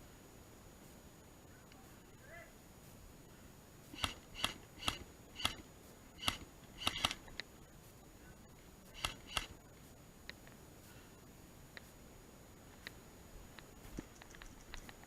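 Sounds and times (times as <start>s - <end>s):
airsoft gun firing single shots: 4.0s - 5.6s, 6.2s - 7.3s, 9.0s - 9.6s.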